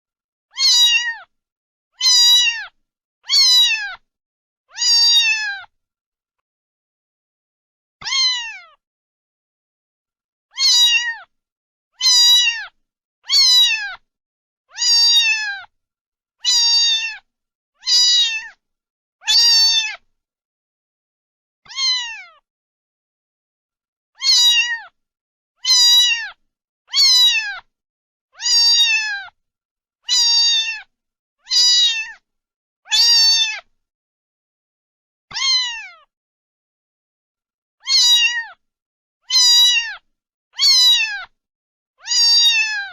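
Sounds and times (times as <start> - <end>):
cat meowing: 0.5 - 1.3, 2.0 - 4.0, 4.7 - 5.7, 8.0 - 8.8, 10.5 - 11.3, 12.0 - 14.0, 14.7 - 15.7, 16.4 - 18.6, 19.2 - 20.0, 21.6 - 22.4, 24.2 - 25.0, 25.6 - 27.7, 28.4 - 29.4, 30.0 - 32.2, 32.9 - 33.7, 35.3 - 36.1, 37.8 - 38.6, 39.2 - 41.4, 42.0 - 42.9.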